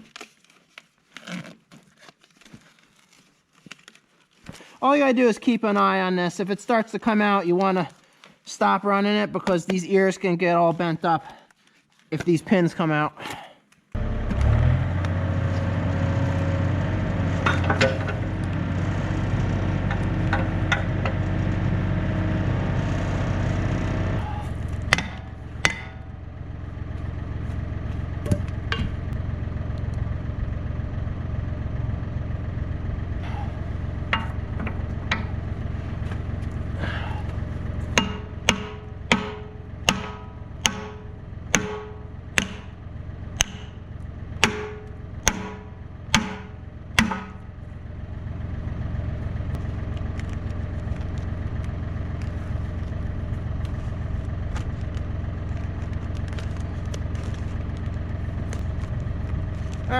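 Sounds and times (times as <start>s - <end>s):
excavator diesel engine running: 14.0s - 59.9s
sharp metallic knocks ringing: 24.9s - 26.2s, 34.1s - 35.4s, 37.9s - 42.8s, 43.4s - 43.8s, 44.4s - 47.5s.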